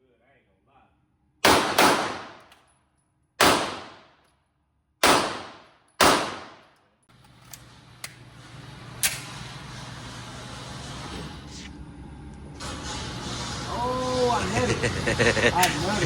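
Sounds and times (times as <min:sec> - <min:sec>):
pistol shots with echo: 0:01.4 - 0:02.5, 0:03.4 - 0:04.2, 0:05.0 - 0:06.7.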